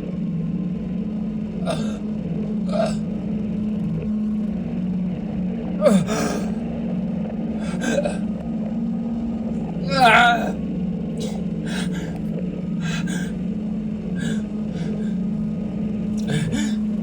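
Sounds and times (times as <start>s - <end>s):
steady low hum: 0.0s - 17.0s
breathy gasps: 1.6s - 2.0s, 5.8s - 6.6s, 7.6s - 8.2s, 9.9s - 10.6s, 11.2s - 12.2s, 12.8s - 13.4s, 14.2s - 15.2s, 16.2s - 16.8s.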